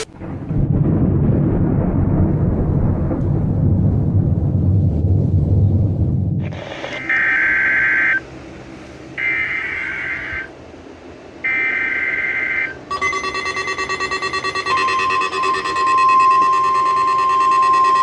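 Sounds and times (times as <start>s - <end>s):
screeching data bursts: 6.4s - 8.3s, 9.2s - 10.5s, 11.4s - 18.0s
long high alert tone: 7.0s - 8.3s, 9.2s - 10.5s, 11.4s - 18.0s.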